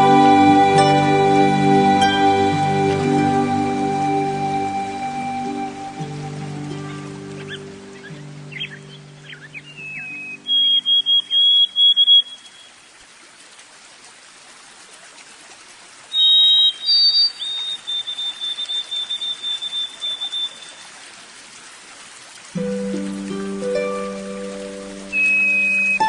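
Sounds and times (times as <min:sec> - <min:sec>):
soft music with low tones: 0:00.0 - 0:10.9, 0:22.6 - 0:26.0
stream water running: 0:00.0 - 0:26.0
small bird chirping: 0:07.4 - 0:12.7, 0:16.2 - 0:20.8, 0:25.2 - 0:26.0.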